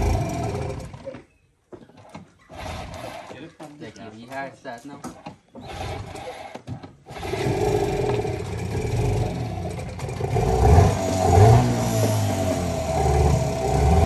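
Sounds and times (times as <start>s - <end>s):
boat engine running: 0.0s - 1.1s, 7.1s - 14.0s.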